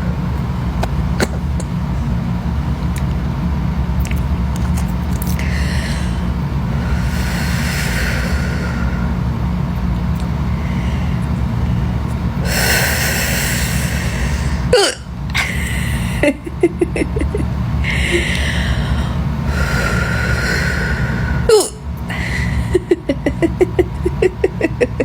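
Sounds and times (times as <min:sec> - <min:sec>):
steady low hum: 0:00.0 - 0:25.0
breaths: 0:05.3 - 0:09.2, 0:10.5 - 0:14.7, 0:15.4 - 0:16.2, 0:17.8 - 0:21.5, 0:22.1 - 0:22.8
person hiccuping: 0:14.7 - 0:15.1, 0:21.5 - 0:21.8.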